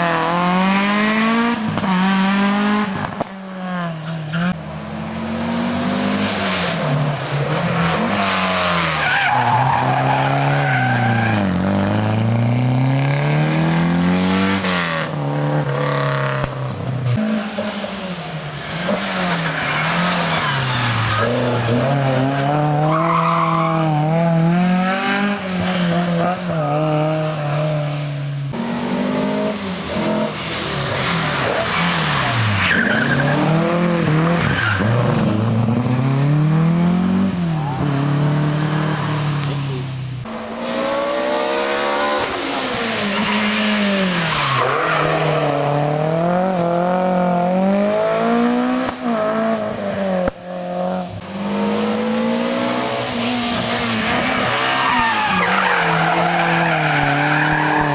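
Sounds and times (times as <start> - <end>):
rally car engine revving: 0.0 - 57.9
tyre squeal: 53.8 - 57.9.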